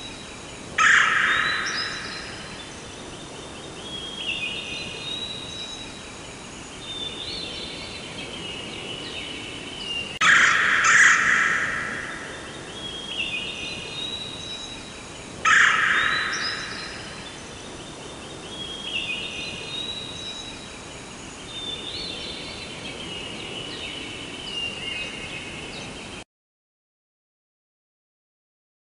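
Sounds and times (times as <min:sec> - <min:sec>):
background hiss: 0:00.0 - 0:26.2
harsh bird calls: 0:00.8 - 0:02.6, 0:10.0 - 0:13.8, 0:15.4 - 0:17.4.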